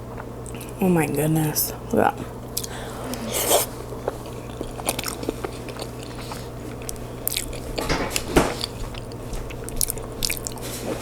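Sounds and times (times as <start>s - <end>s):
wet chewing mouth smacks: 2.5s - 7.6s.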